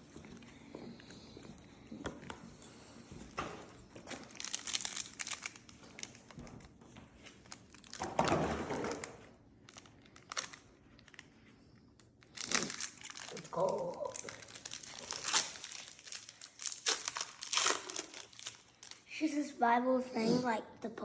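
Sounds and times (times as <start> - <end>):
foil wrapper crinkling: 3.9 - 11.4, 12.0 - 19.2.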